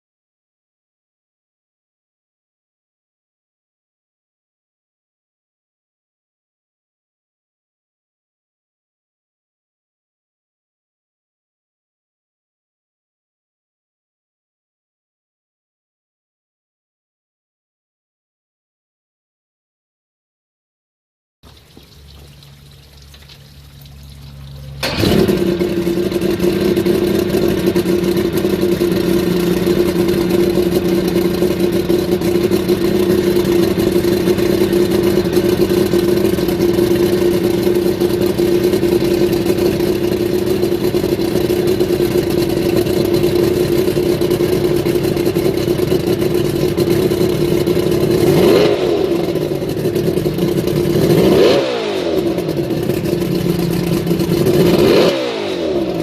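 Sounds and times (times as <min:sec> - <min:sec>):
outboard engine running and revving: 0:24.4 - 0:56.0.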